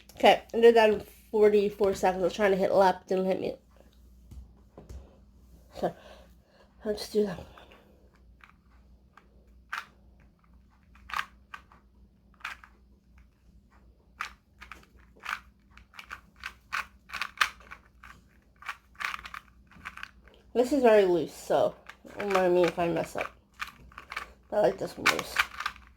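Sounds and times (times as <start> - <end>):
puzzle cube layers clicking: 14.2 - 20.4, 21.7 - 25.9.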